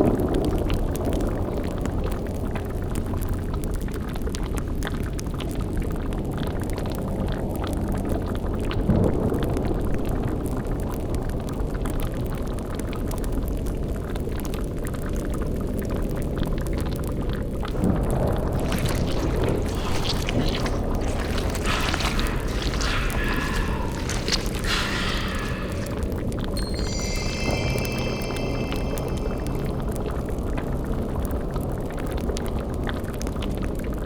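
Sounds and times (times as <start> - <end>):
small crackles: 17.6 - 26.1
cauldron bubbling: 17.6 - 30.7.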